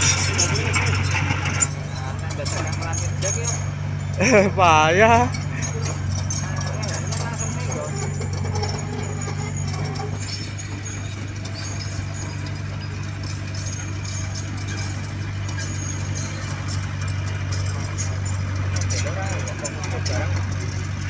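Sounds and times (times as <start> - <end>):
diesel engine running: 0.0 - 21.0.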